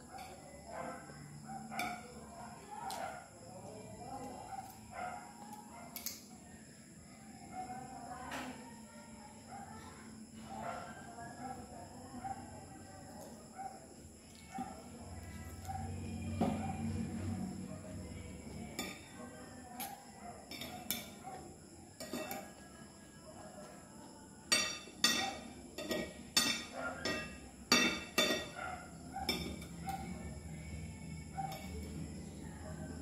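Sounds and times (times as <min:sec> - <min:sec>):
cutlery clinking on plate: 0:19.8 - 0:21.3, 0:22.0 - 0:22.6, 0:24.5 - 0:28.6.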